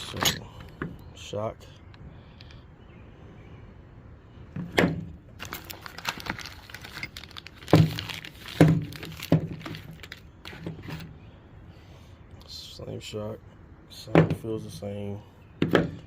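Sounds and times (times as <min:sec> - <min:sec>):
plastic packaging rustling: 0:05.4 - 0:11.0.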